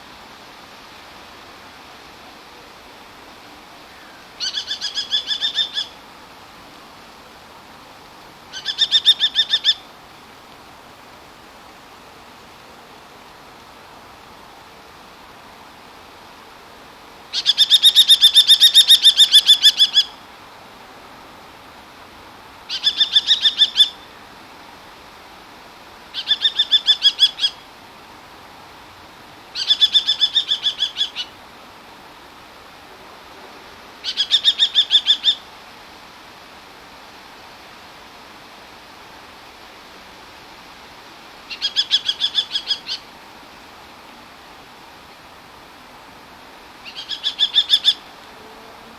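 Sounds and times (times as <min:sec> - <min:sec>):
steady background hiss: 0:00.0 - 0:48.9
kestrel shrill calls: 0:04.4 - 0:06.0, 0:08.5 - 0:09.8, 0:17.3 - 0:20.1, 0:22.7 - 0:24.0, 0:26.2 - 0:27.6, 0:29.6 - 0:31.3, 0:34.0 - 0:35.4, 0:41.5 - 0:43.1, 0:46.8 - 0:48.1.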